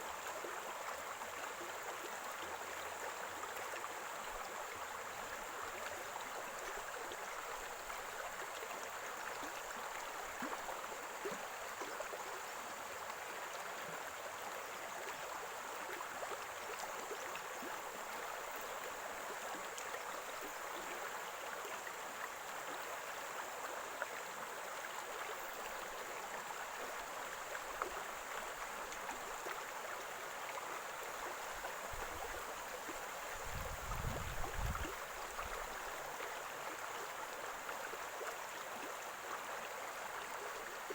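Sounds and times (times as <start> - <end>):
stream water gurgling: 0.0 - 40.9.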